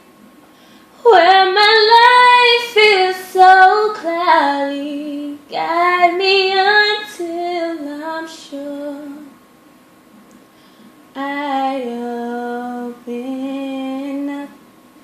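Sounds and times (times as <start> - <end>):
woman singing unaccompanied: 1.0 - 9.4, 11.2 - 14.6.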